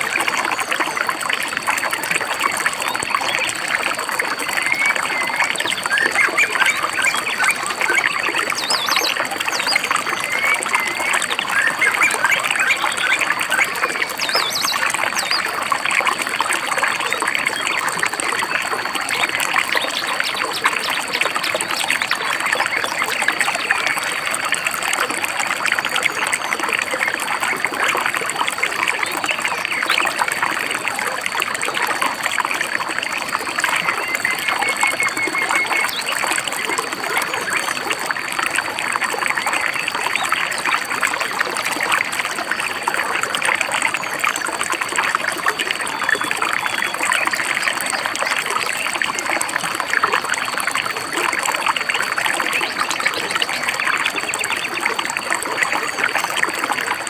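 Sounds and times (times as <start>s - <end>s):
stream babbling and trickling: 0.0s - 57.0s
bird chirps: 14.1s - 15.4s.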